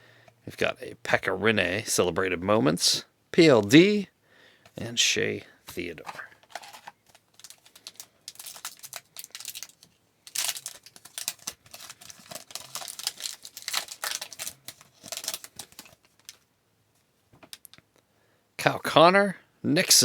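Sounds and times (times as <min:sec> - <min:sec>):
foil wrapper tearing and crinkling: 0:06.5 - 0:16.4.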